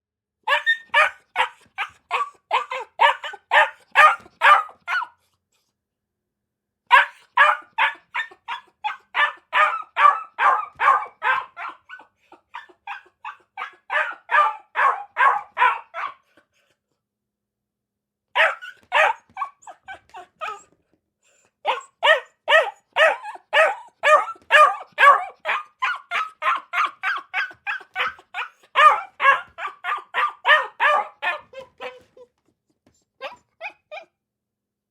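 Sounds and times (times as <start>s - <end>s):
dog barking rapidly: 0.5s - 5.2s, 6.9s - 16.2s, 18.4s - 20.6s, 21.7s - 32.0s.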